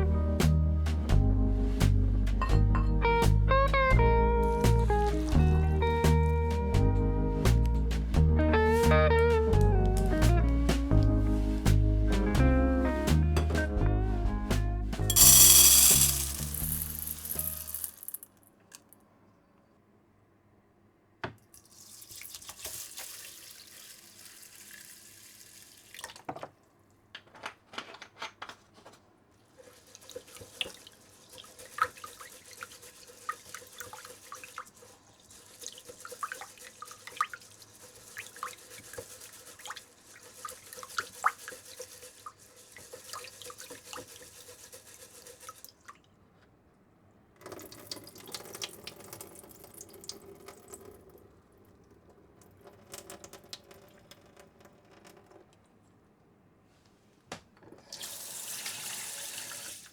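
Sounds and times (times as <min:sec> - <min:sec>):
small clicks and splashes: 0:21.4 - 0:46.1, 0:47.4 - 0:55.7
tap water running into sink: 0:57.9 - 0:59.9.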